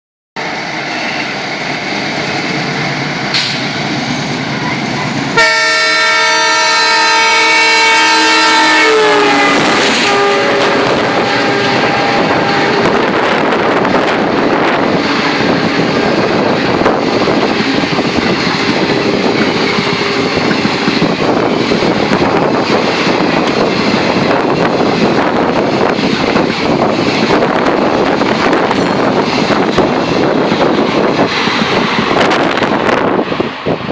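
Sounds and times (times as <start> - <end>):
diesel locomotive approaching: 0.4 - 33.9
train coaches rumbling and rattling: 0.4 - 33.9
locomotive horn blaring: 5.4 - 13.8.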